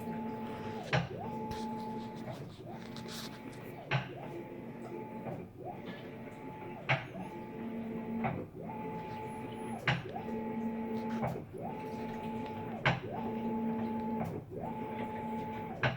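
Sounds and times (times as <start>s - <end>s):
washer motor whine: 0.0s - 15.9s.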